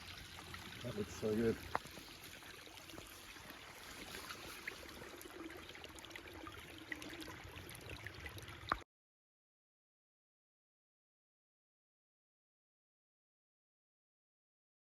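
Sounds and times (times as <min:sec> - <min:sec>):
stream trickling: 0:00.0 - 0:08.8.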